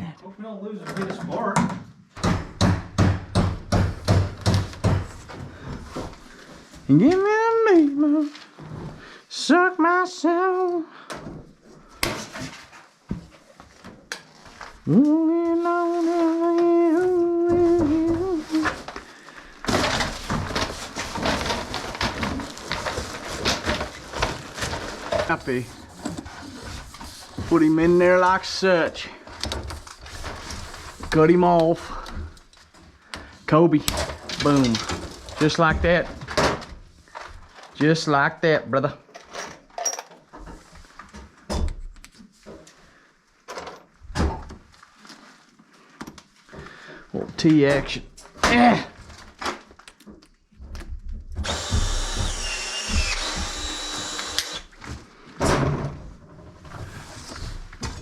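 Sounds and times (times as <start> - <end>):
knocks and clunks of plumbing tools: 0.9 - 7.2, 39.1 - 42.8, 46.0 - 58.0
rustling and clattering: 15.9 - 28.0, 29.2 - 31.3, 33.8 - 37.8, 42.3 - 51.7, 54.8 - 58.0.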